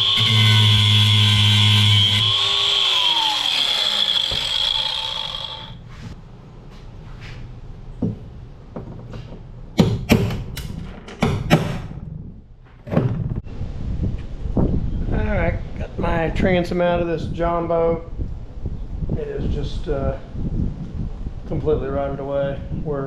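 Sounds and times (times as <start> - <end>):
angle grinder winding down: 0.0 - 5.8.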